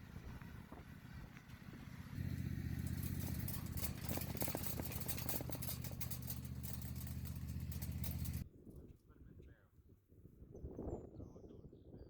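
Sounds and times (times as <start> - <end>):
motorized yard trimmer running: 0.0 - 8.4.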